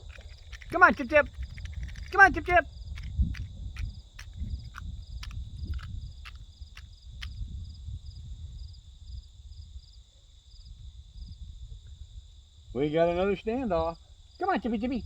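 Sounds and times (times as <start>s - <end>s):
sharp clicks: 0.0s - 7.4s
insect chorus chirping: 0.0s - 15.0s.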